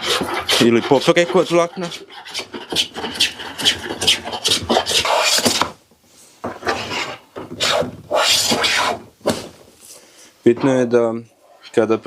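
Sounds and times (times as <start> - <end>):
hand plane shaving wood: 0.0 - 5.7, 6.6 - 9.0.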